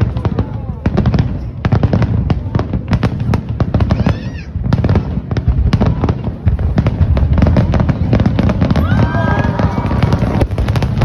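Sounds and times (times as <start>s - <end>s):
fireworks crackling and popping: 0.0s - 11.0s
deep booming rumble: 4.5s - 11.0s.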